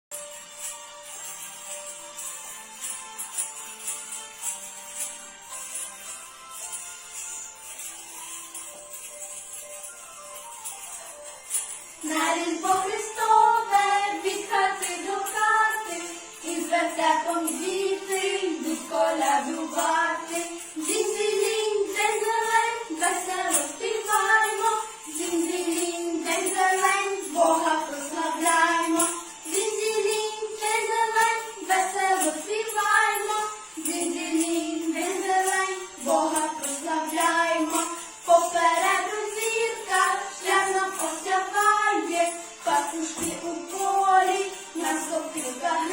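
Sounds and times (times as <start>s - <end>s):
jingling bells: 0.1s - 45.9s
women singing a carol: 12.0s - 45.9s.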